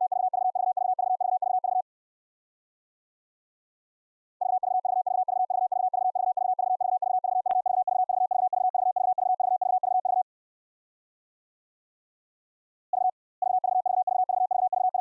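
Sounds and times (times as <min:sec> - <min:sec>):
morse code beeps: 0:04.4 - 0:10.2, 0:13.0 - 0:15.0.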